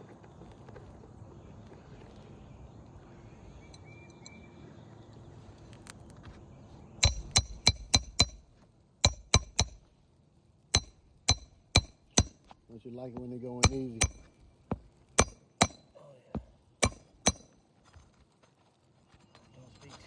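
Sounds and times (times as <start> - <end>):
hammer striking roofing nails: 7.0 - 9.9, 10.8 - 12.5, 13.2 - 17.6.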